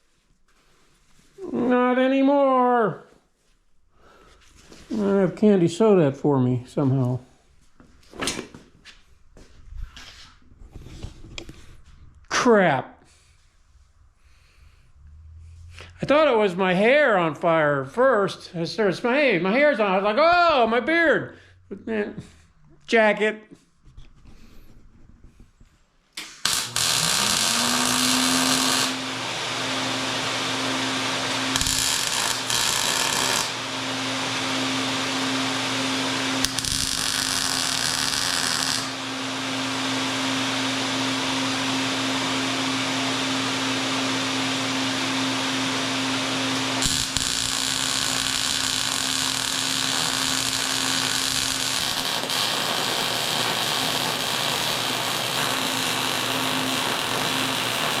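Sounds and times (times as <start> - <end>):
angle grinder on metal: 26.3 - 40.6, 45.0 - 58.0.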